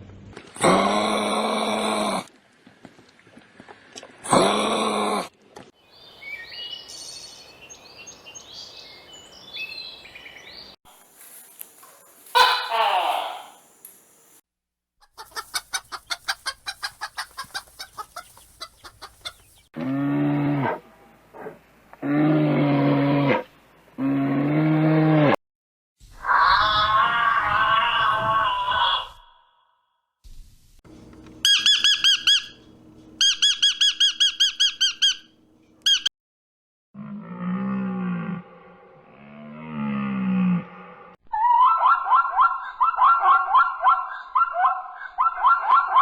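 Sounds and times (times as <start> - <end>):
chickens clucking: 11.8 - 13.0, 15.0 - 19.7
animal squeaky high calls: 12.3 - 13.6, 31.4 - 32.6, 33.2 - 35.2, 35.8 - 36.1, 41.3 - 46.0
cow mooing: 19.8 - 20.9, 37.0 - 41.1
low drawn-out animal call: 19.8 - 25.4, 26.1 - 29.6, 37.0 - 42.3.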